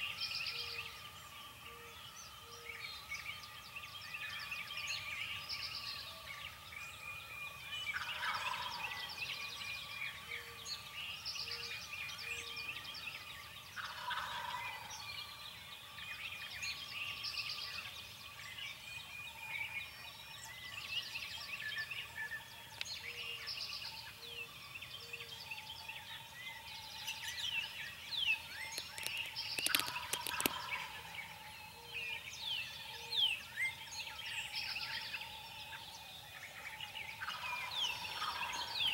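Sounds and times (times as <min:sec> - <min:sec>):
songbirds chirping: 0:00.0 - 0:38.9
turkey gobbling: 0:13.8 - 0:14.8.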